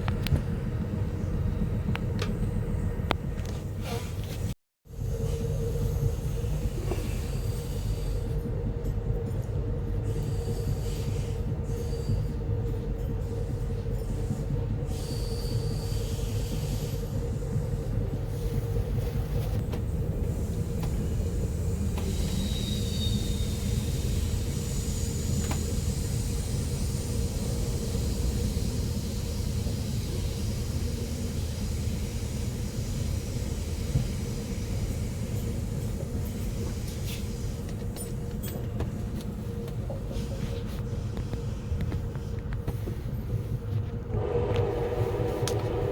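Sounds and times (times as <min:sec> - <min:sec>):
train rumbling on rails: 0:00.0 - 0:45.9
high wheel squeals: 0:22.0 - 0:25.9.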